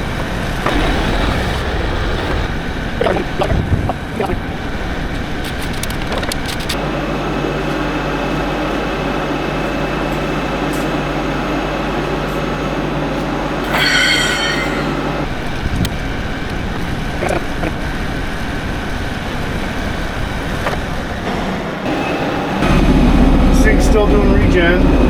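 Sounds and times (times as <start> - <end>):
diesel engine running: 0.0 - 13.7, 17.8 - 25.0
high metallic squeal: 13.6 - 15.3.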